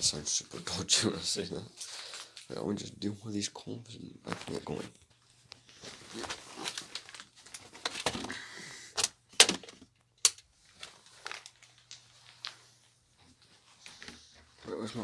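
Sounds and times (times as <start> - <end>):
rustling and crinkling: 4.2 - 15.0
sharp clicks or knocks: 9.0 - 10.4.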